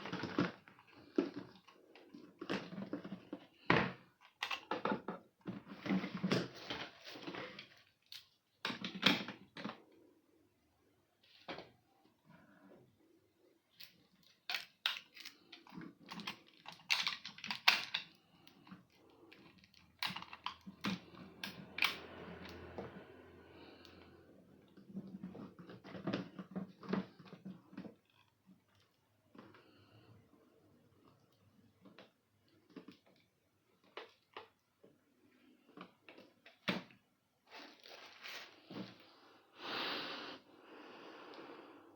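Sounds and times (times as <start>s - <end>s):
sharp clicks and knocks of objects: 13.8s - 22.6s.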